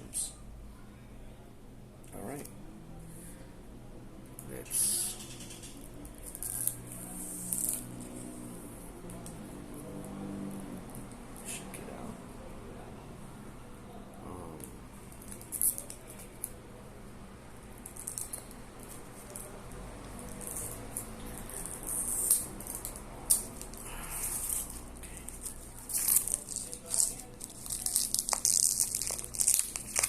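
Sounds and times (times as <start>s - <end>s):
shrink wrap crinkling: 15.1s - 16.5s, 20.2s - 30.0s.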